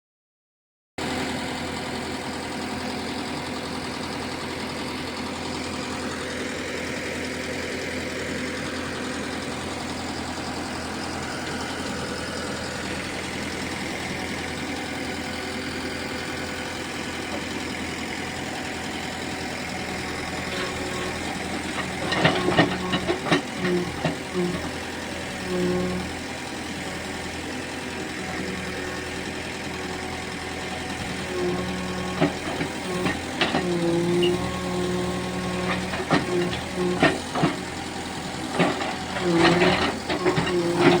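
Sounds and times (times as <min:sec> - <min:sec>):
diesel engine running: 0:01.0 - 0:41.0
sharp knocks and clatter: 0:20.5 - 0:24.6, 0:38.5 - 0:41.0.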